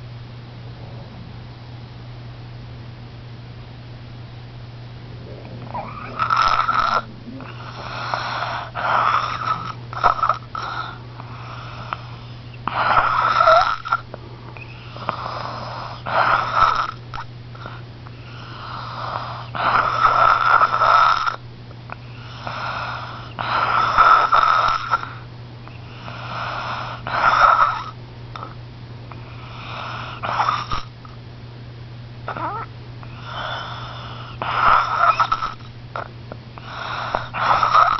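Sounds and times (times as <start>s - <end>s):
person snoring: 5.2s - 12.0s, 12.7s - 14.0s, 14.9s - 17.2s, 32.3s - 35.6s, 36.6s - 37.9s.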